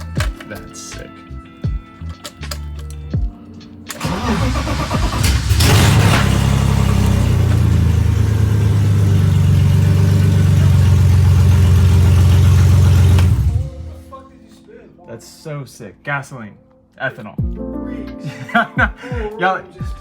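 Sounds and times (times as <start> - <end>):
car engine starting and idling: 3.9 - 14.0.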